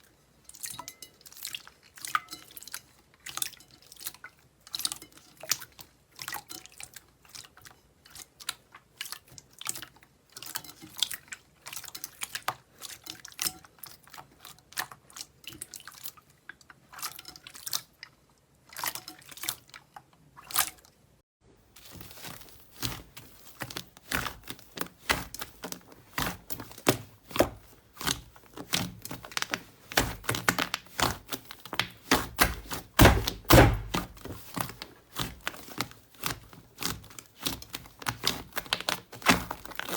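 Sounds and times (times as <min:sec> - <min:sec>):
slime squelching thumps: 0:21.7 - 0:39.9
slime crackling and popping: 0:21.8 - 0:39.9.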